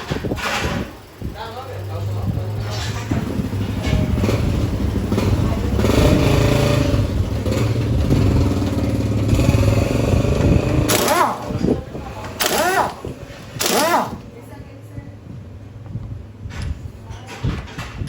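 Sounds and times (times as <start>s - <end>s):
motorcycle engine revving: 1.7s - 14.4s.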